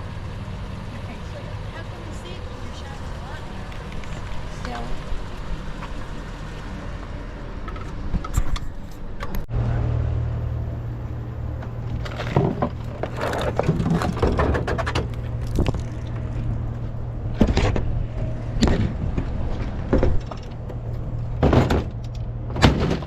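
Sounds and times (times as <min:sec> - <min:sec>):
vehicle engine idling: 0:00.0 - 0:22.6
knocks and clatters: 0:11.6 - 0:23.0.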